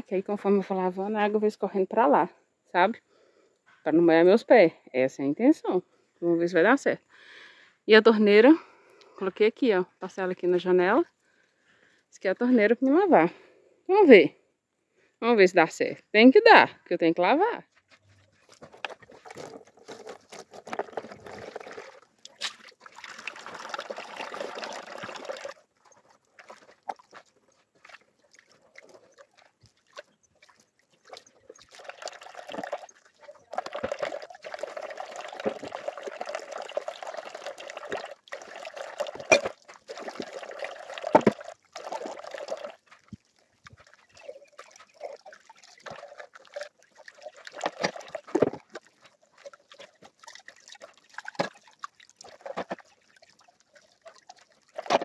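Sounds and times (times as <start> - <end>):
tap water running and splashing: 18.6 - 55.0.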